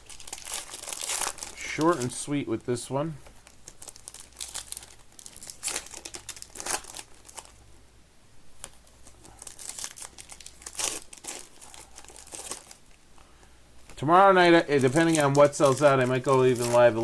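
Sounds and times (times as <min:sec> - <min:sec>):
wrappers tearing and crinkling: 0:00.0 - 0:02.4, 0:03.4 - 0:07.6, 0:08.6 - 0:13.0, 0:14.4 - 0:17.0.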